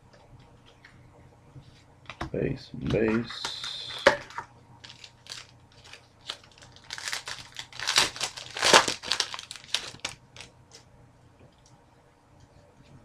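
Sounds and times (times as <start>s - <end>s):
plastic packaging crinkling: 4.3s - 10.8s.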